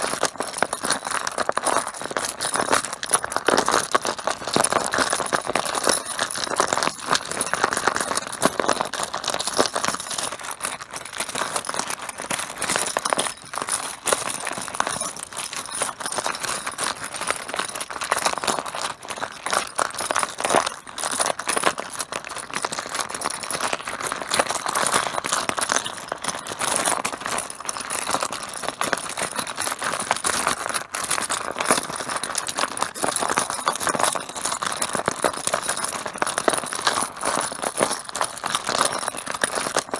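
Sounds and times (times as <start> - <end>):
mahjong tiles clacking: 0.0 - 22.2.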